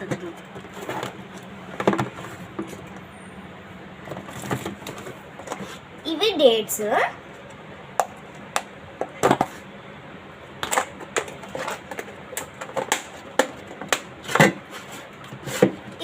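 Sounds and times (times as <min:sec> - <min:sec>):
plastic containers clicking and knocking: 0:00.0 - 0:02.7, 0:10.6 - 0:15.9.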